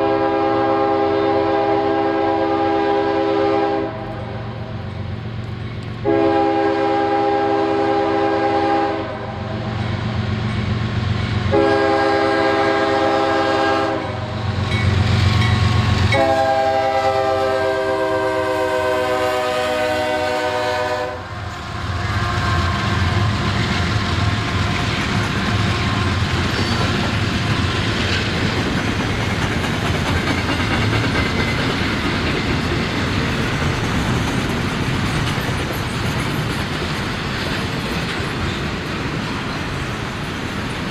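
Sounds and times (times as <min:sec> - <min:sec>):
locomotive horn blasts: 0:00.0 - 0:04.4, 0:06.0 - 0:09.4, 0:11.5 - 0:14.4, 0:16.1 - 0:23.2
train wheels clickety-clack: 0:14.2 - 0:19.4, 0:21.4 - 0:40.9.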